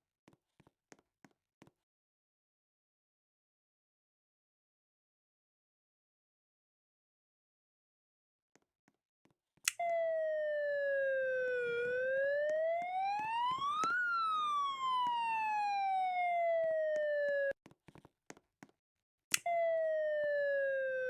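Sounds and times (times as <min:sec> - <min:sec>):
siren-like sliding tone: 0:09.8 - 0:17.6
click: 0:19.3 - 0:19.5.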